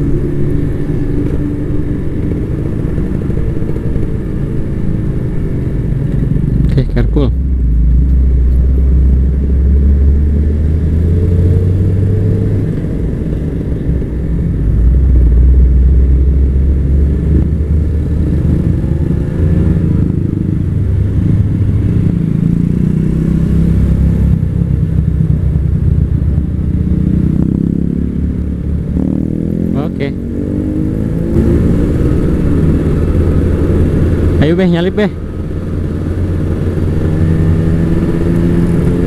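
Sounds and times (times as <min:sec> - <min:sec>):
two-stroke motorcycle engine revving: 0:14.0 - 0:39.0.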